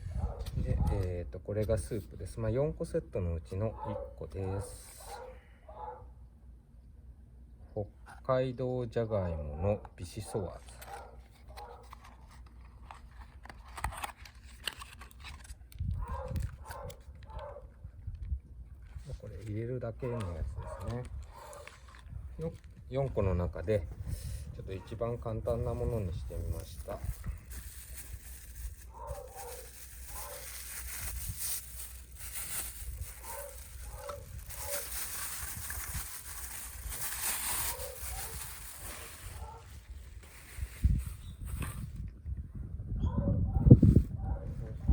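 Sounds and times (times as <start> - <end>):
wind buffeting microphone: 0.0 - 1.0, 15.8 - 19.1, 20.4 - 28.8, 39.3 - 44.9
handling clicks and rustles: 10.6 - 19.3, 25.7 - 40.4.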